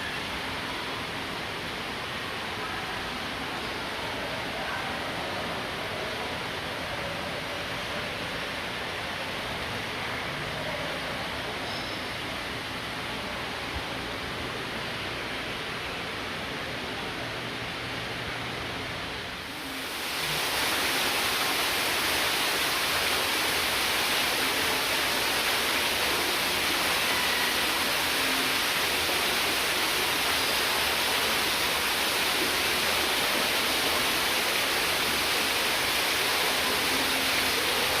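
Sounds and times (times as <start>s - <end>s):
steady rushing noise: 12.4s - 38.0s.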